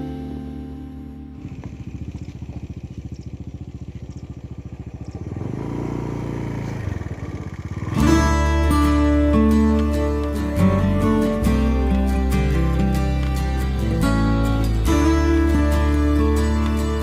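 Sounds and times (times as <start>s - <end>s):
guitar music: 0.0s - 2.0s, 7.9s - 17.0s
small engine puttering: 1.2s - 17.0s.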